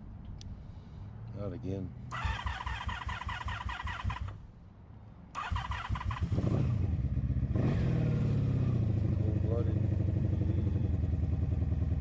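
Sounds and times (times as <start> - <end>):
electric starter cranking engine: 2.1 - 4.4, 5.4 - 6.2
motorcycle engine running: 5.5 - 12.0.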